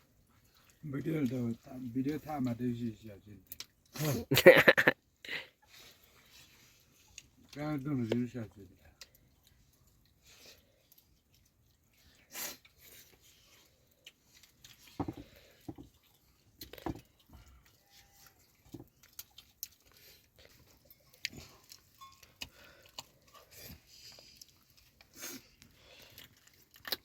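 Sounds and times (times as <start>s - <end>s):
faint chewing: 0.0s - 4.3s, 5.0s - 27.0s
small clicks and knocks: 16.6s - 17.7s.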